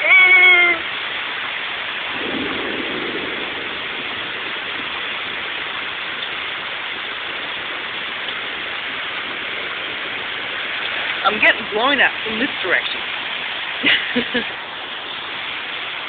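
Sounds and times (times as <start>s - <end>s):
heavy rain pouring: 0.0s - 16.0s.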